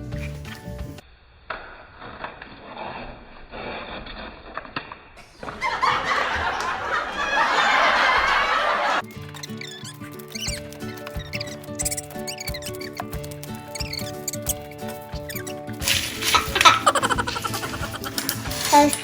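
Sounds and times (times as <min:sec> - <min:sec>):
laughter: 0:05.3 - 0:09.1, 0:16.2 - 0:18.4.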